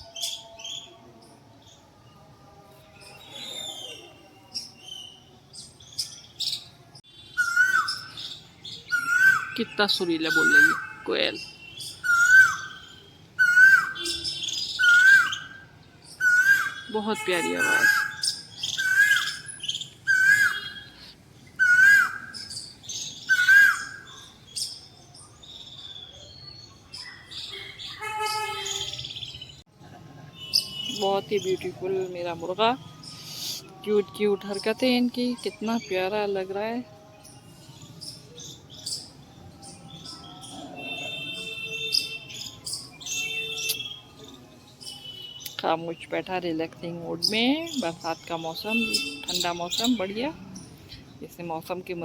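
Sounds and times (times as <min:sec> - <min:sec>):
small birds chirping: 0:03.0 - 0:29.7, 0:30.3 - 0:52.0
bird whistled call: 0:07.3 - 0:09.6, 0:11.8 - 0:15.5, 0:16.2 - 0:16.9, 0:17.6 - 0:20.9, 0:21.6 - 0:24.3.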